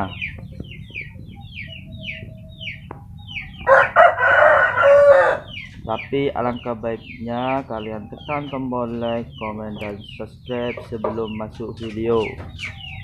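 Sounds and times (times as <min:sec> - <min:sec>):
rooster crowing: 0:03.6 - 0:05.6.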